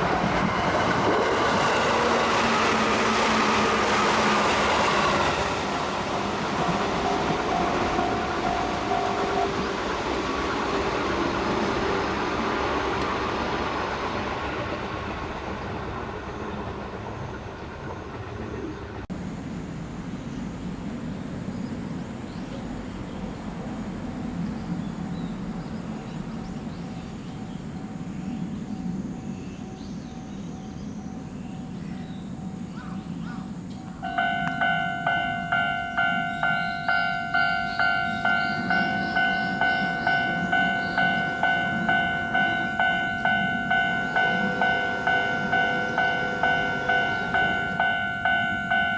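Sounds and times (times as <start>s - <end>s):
train rumbling over crossing: 0.0s - 48.9s
level crossing warning bell: 33.8s - 48.9s.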